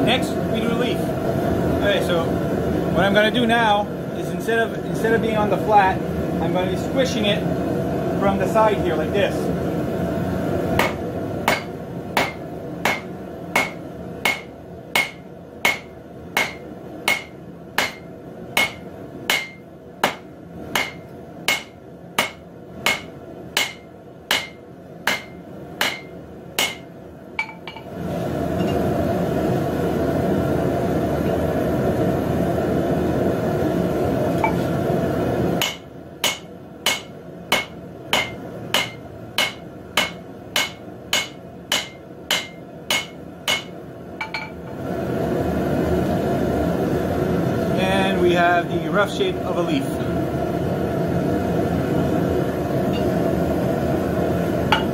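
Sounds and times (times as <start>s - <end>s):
hammer striking steel on anvil: 10.8s - 27.9s, 35.6s - 44.6s.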